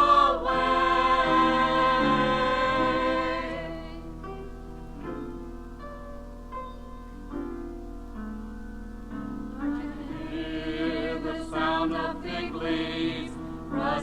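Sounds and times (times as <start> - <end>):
gospel singers holding a note: 0.0 - 4.2, 9.6 - 14.0.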